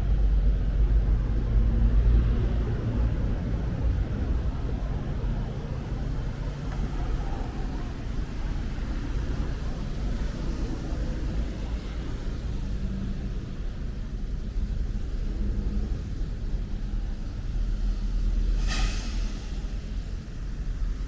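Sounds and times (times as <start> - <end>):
city traffic rumble: 0.0 - 21.0.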